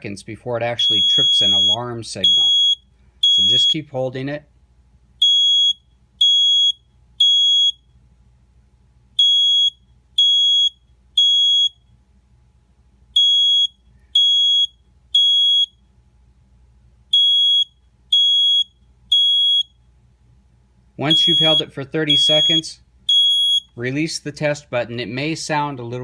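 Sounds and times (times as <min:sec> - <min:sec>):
smoke detector beeping: 0:00.8 - 0:04.0, 0:05.2 - 0:07.9, 0:09.2 - 0:11.9, 0:13.1 - 0:15.9, 0:17.1 - 0:19.8, 0:21.0 - 0:23.8.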